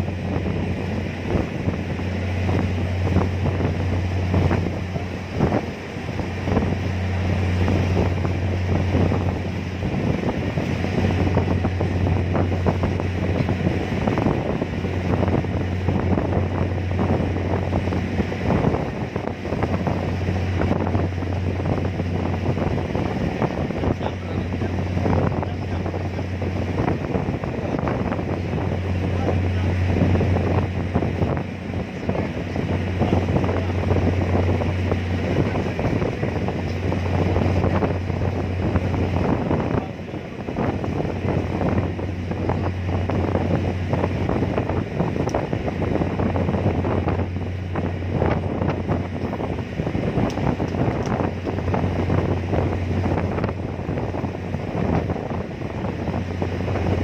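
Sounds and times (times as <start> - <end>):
ferry engine low hum: 0.0 - 57.0
wind buffeting microphone: 0.0 - 57.0.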